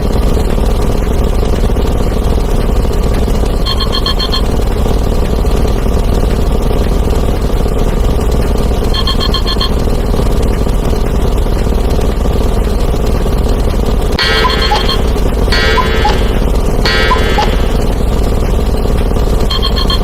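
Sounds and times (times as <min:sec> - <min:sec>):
rapid electronic ringing beeps: 0:03.6 - 0:04.5, 0:08.9 - 0:09.8, 0:14.2 - 0:18.4, 0:19.4 - 0:20.0
dense rumble of sound effects: 0:14.0 - 0:20.0.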